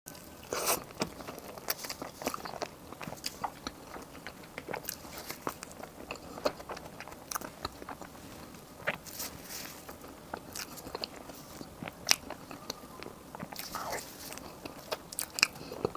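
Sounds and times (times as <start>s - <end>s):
person chewing close up: 0.1s - 15.9s
mouth clicks and smacks: 8.8s - 15.9s.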